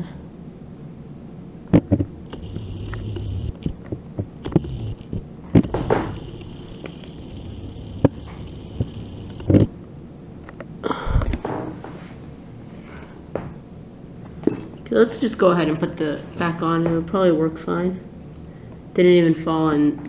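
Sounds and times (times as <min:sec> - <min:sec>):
faint high whine: 0:00.0 - 0:11.5.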